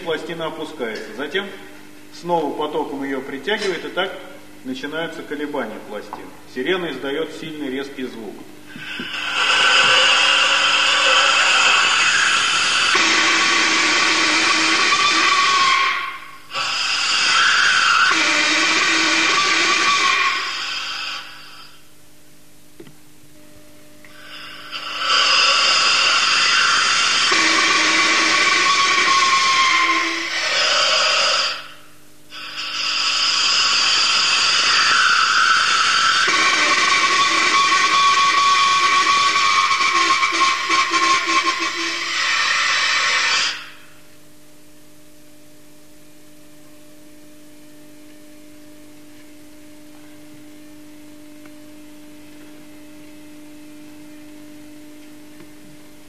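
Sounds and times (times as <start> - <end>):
steady electrical hum: 0.0 - 56.0
siren hissing whistle: 8.8 - 21.8, 24.1 - 31.8, 32.4 - 44.0.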